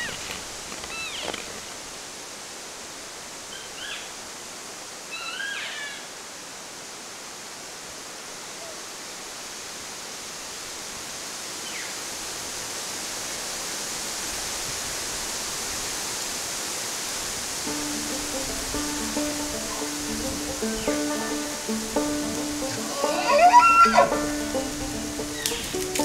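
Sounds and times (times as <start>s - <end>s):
steady rushing outdoor noise: 6.2s - 26.0s.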